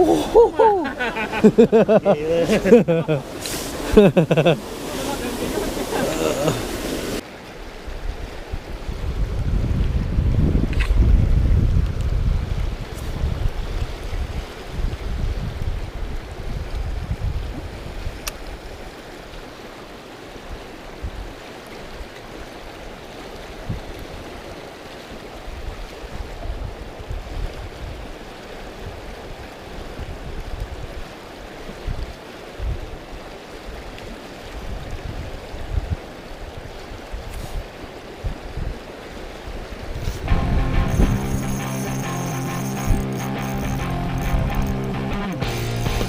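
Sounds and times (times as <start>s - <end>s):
river water rushing: 0.0s - 9.2s, 13.5s - 46.0s
wind buffeting microphone: 7.9s - 18.7s, 34.6s - 38.8s.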